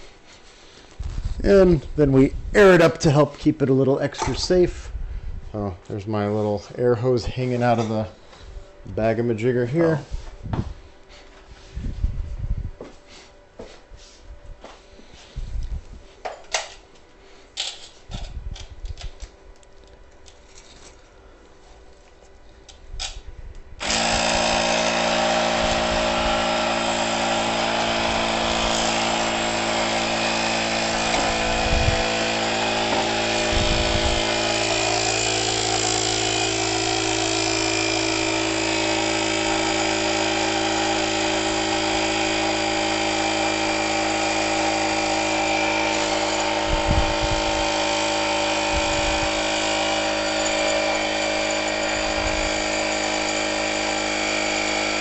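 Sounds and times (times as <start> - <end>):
air compressor humming: 20.4 - 55.0.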